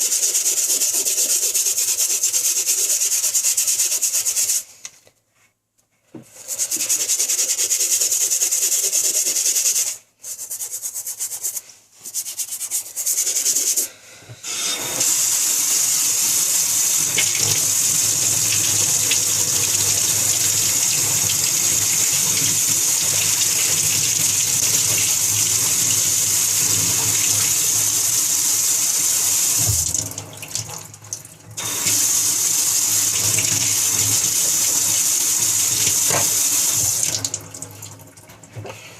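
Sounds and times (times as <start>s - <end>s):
toothbrush scrubbing sneaker sole: 0.0s - 4.7s, 6.4s - 13.9s, 14.9s - 30.0s, 31.6s - 37.3s
tap running into a sink: 16.8s - 27.7s, 29.4s - 38.8s.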